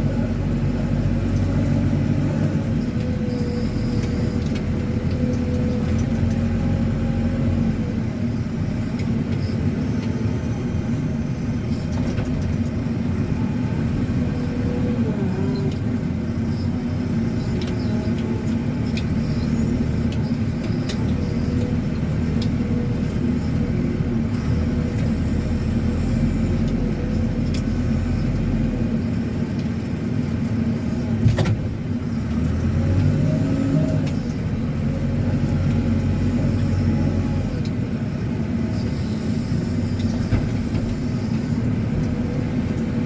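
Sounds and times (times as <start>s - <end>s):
diesel engine running: 0.0s - 43.0s.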